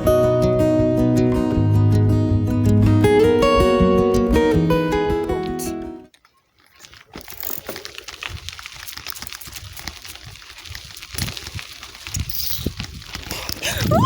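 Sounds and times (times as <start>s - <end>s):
bicycle tyres crunching on gravel: 5.4s - 14.0s
bike rattling and knocking: 7.0s - 14.0s.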